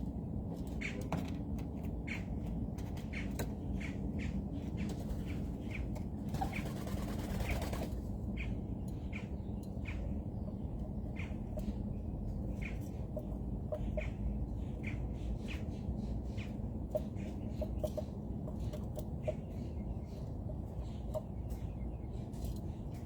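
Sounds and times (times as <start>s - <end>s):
low background rumble: 0.0s - 23.0s
birds chirping: 3.0s - 23.0s
wings fluttering: 6.2s - 8.1s.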